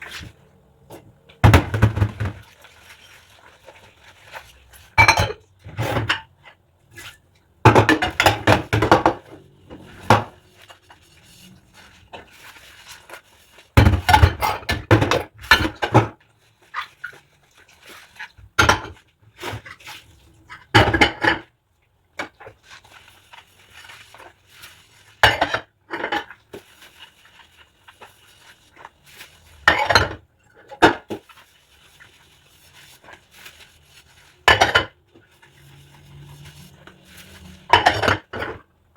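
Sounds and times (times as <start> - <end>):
dishes and cutlery clinking: 5.0 - 6.3, 36.1 - 38.7.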